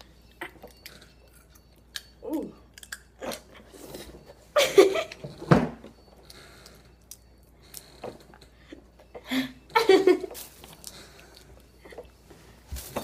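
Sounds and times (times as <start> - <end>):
peanuts cracked and chewed: 0.4 - 3.5.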